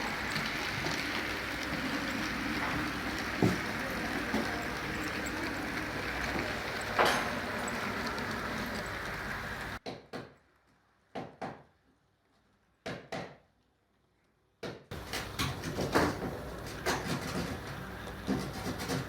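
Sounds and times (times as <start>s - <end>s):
train running noise: 0.0s - 9.8s, 14.9s - 19.0s
train wheels clacking over joints: 0.0s - 9.8s, 14.9s - 19.0s.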